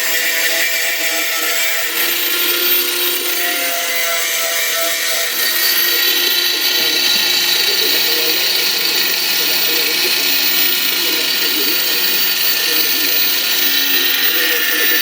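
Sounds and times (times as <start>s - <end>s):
power tool whining on steel: 0.0s - 15.0s.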